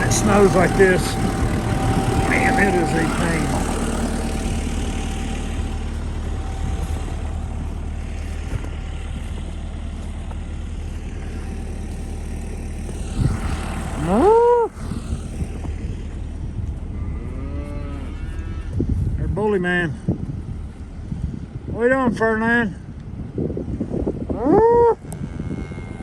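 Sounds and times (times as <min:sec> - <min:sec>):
diesel tractor idling: 0:00.0 - 0:24.3
cow mooing: 0:16.9 - 0:18.8, 0:25.0 - 0:26.0.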